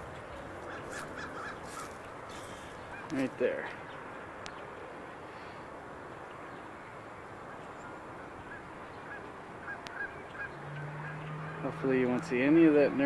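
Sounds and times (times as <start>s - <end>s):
geese honking: 0.0s - 3.4s, 7.5s - 11.8s
outdoor background noise: 0.0s - 13.0s.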